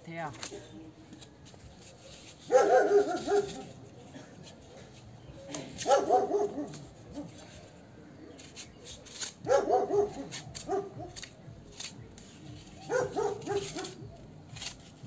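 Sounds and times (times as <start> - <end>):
dog barking: 2.5 - 3.7, 5.8 - 7.4, 9.5 - 11.2, 12.8 - 14.0.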